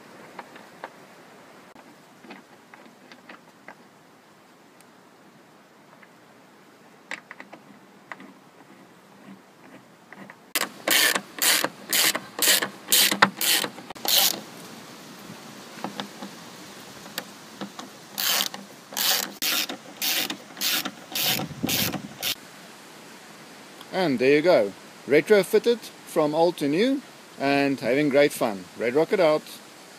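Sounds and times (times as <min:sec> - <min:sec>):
ratchet wrench ratcheting: 0:10.6 - 0:14.4, 0:18.2 - 0:22.4.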